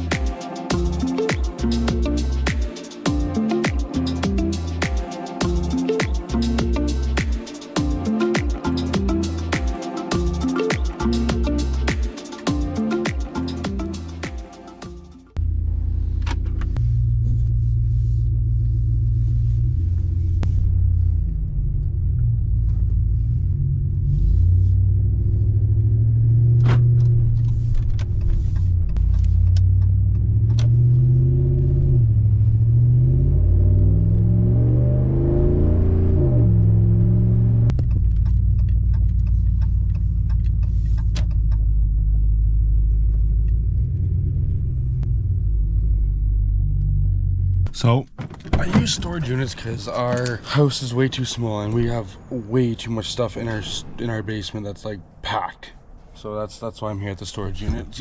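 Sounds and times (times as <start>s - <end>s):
road rumble: 15.2s - 58.0s
car engine accelerating: 15.3s - 47.9s.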